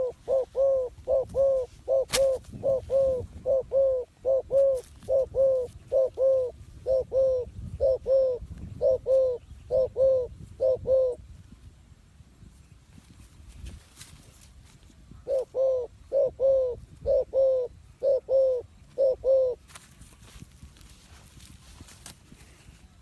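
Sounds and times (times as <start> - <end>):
dove cooing: 0.0 - 11.3, 15.1 - 19.6.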